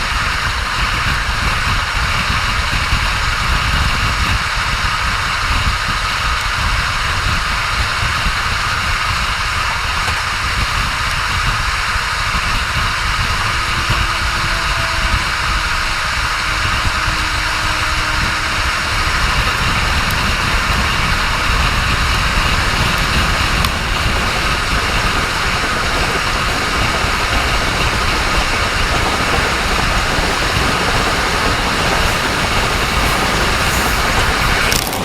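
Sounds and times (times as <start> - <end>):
train wheels rumbling on rails: 0.0 - 35.0
rushing noise: 11.3 - 35.0.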